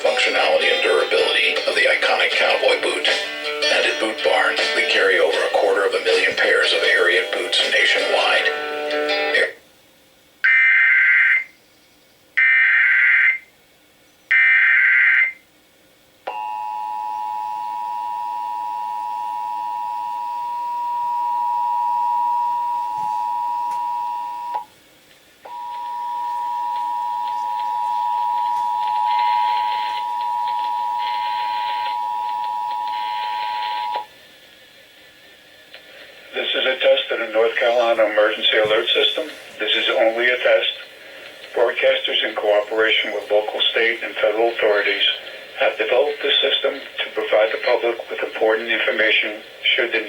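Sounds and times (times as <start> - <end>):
two-tone attention signal: 25.5 - 34.1.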